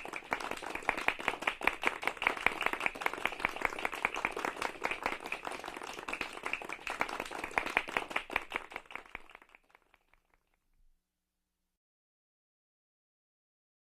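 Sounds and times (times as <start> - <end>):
group applauding: 0.0 - 10.4.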